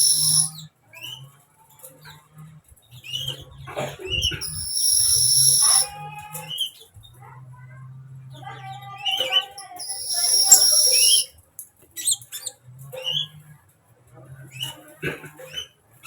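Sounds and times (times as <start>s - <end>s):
bird singing high chirps: 0.0s - 0.6s, 4.2s - 5.9s, 9.0s - 11.3s.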